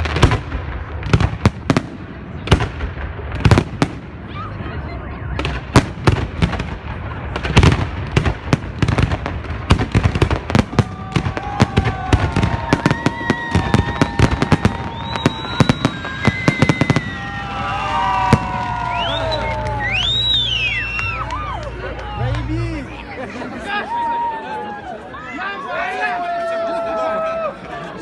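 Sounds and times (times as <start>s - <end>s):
fireworks bangs and crackles: 0.0s - 22.0s
fireworks whistling: 9.9s - 21.6s.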